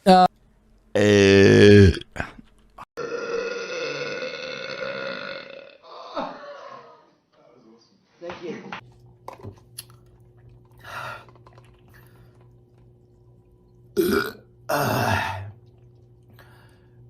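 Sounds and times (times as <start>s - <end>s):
man burping: 1.0s - 2.4s, 3.0s - 7.1s, 14.0s - 15.6s.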